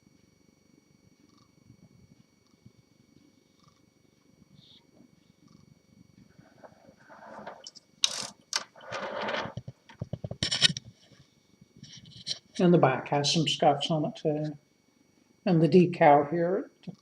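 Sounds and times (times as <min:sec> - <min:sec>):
typewriter scraping on table: 0:06.6 - 0:09.7
typewriter handling rustling: 0:07.3 - 0:09.6.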